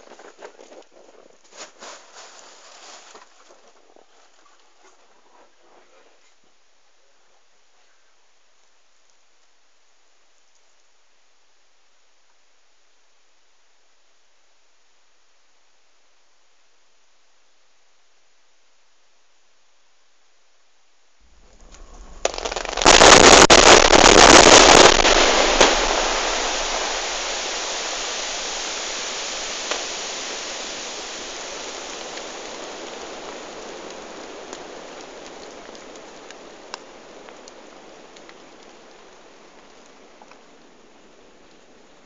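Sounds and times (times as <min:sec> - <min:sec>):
rippling explosive detonations: 0:21.3 - 0:27.7
blast rumble: 0:21.3 - 0:29.0
rushing debris noise: 0:21.3 - 0:36.3.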